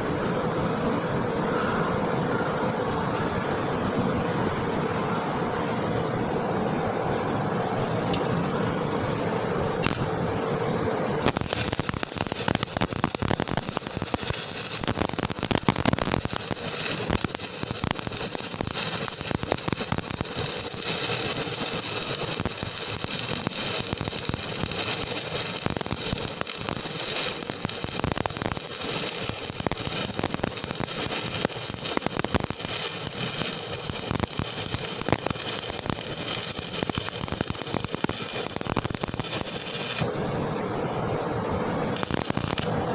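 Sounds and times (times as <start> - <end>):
steady hum: 0.0 - 42.9
welding arc crackling: 9.8 - 10.1, 11.2 - 40.3, 41.9 - 42.9.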